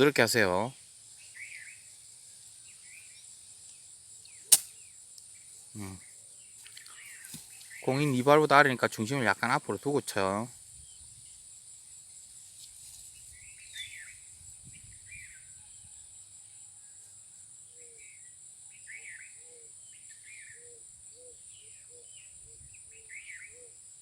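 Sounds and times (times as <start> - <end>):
bird chirps: 0.0 - 8.3, 13.1 - 15.9, 17.7 - 23.8
insects buzzing drone: 0.0 - 24.0
short lower bird calls: 1.2 - 1.9, 18.8 - 23.8.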